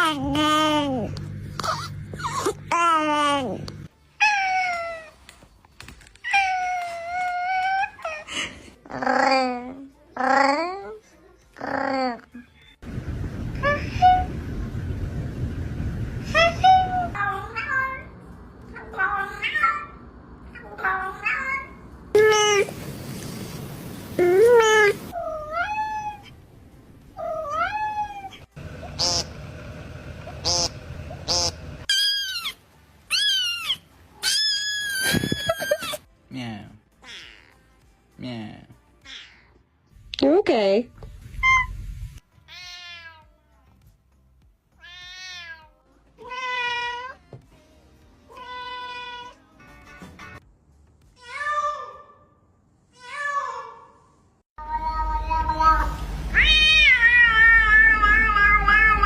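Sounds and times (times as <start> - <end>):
cat meowing: 56.4 - 59.0.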